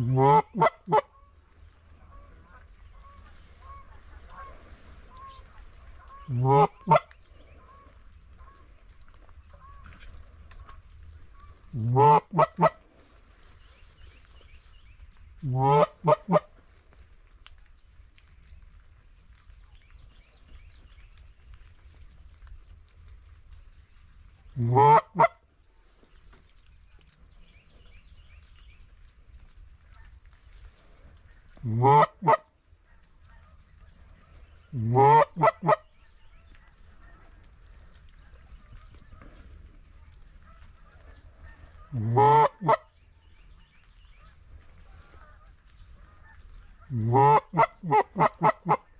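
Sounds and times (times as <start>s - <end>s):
goose call honk and clucks: 0.0s - 1.3s, 2.0s - 8.6s, 9.5s - 12.8s, 15.4s - 16.5s, 24.6s - 25.4s, 31.6s - 33.6s, 34.6s - 35.8s, 40.4s - 42.9s, 46.0s - 48.9s
distant goose calls: 0.0s - 13.5s, 15.4s - 16.6s, 24.6s - 25.4s, 31.2s - 42.9s, 44.1s - 48.9s.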